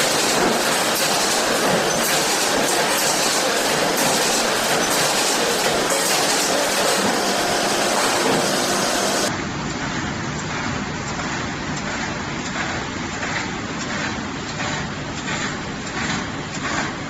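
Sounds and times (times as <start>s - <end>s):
stitching machine clattering: 0.0s - 9.3s.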